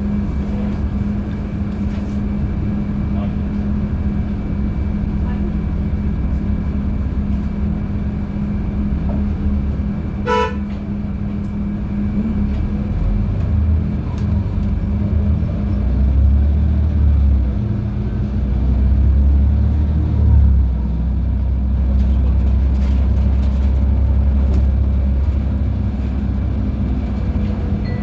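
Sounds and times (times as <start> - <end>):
bus engine and road rumble: 0.0 - 28.0
short horn toot: 10.3 - 10.6.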